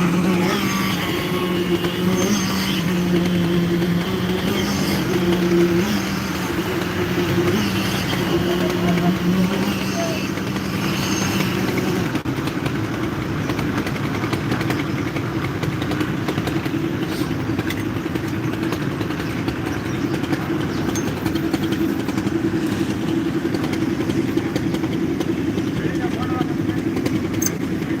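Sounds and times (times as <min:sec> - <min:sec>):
construction machinery engine humming: 0:00.0 - 0:28.0
light constant clatter: 0:00.0 - 0:28.0.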